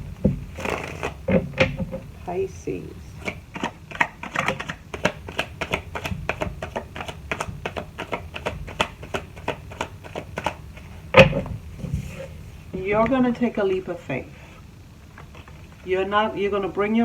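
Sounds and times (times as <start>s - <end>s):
cards being shuffled: 0.0s - 12.8s.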